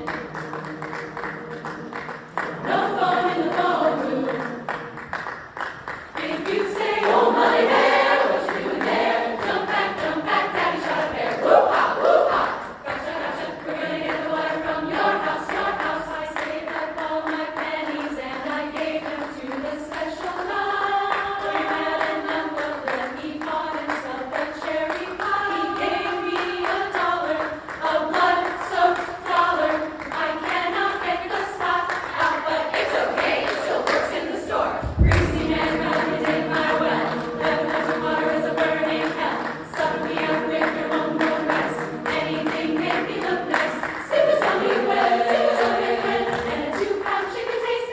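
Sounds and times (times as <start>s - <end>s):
women's chorus singing: 0.0s - 47.9s
low thump: 34.8s - 36.3s.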